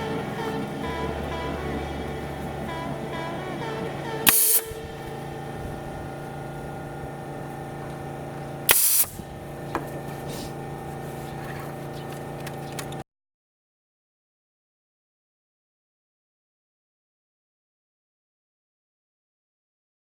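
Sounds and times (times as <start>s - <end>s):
pneumatic staple gun firing: 4.2s - 5.2s, 8.6s - 10.0s.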